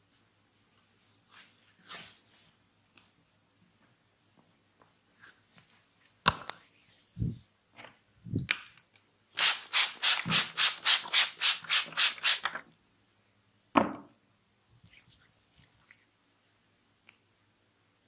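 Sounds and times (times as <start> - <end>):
hands rubbing briskly: 9.7 - 12.5.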